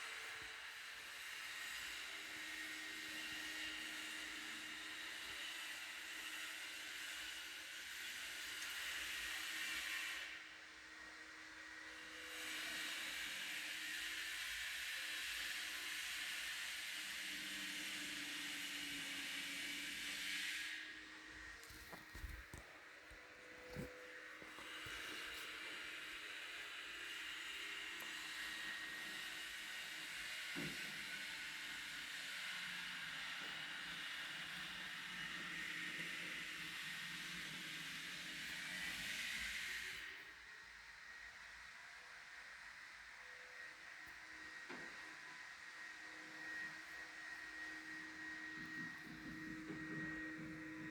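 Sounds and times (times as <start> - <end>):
machine hissing whir: 0.0 - 22.6, 23.3 - 40.2.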